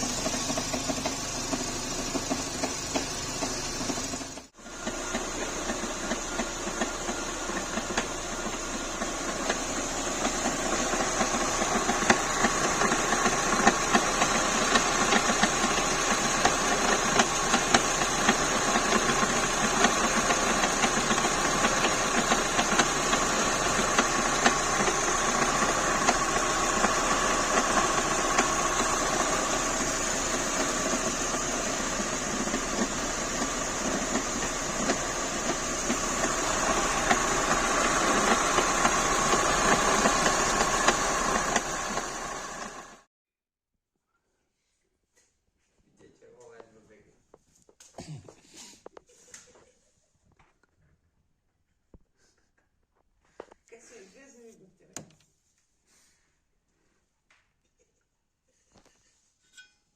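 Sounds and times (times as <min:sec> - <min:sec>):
car engine running: 0:00.0 - 0:43.1
engine knocking: 0:00.0 - 0:43.1.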